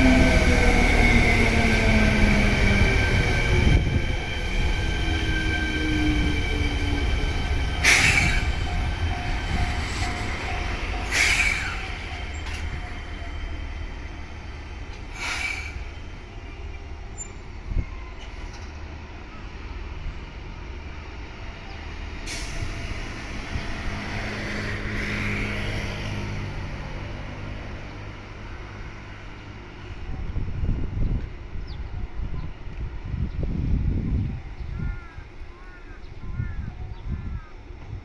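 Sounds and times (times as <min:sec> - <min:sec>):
electric train rumbling: 0:00.0 - 0:38.0
air brake hisses: 0:07.8 - 0:08.6, 0:11.0 - 0:12.6, 0:15.1 - 0:16.0, 0:22.2 - 0:23.3.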